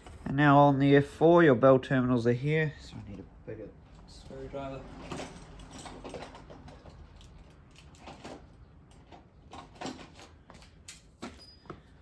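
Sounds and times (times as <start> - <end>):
hand tools clicking and clattering: 5.0 - 11.9.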